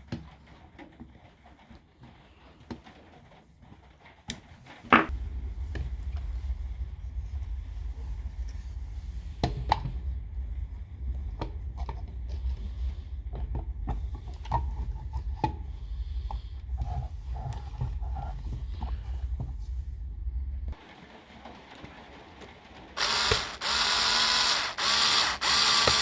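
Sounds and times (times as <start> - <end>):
steady low hum: 5.1 - 20.8.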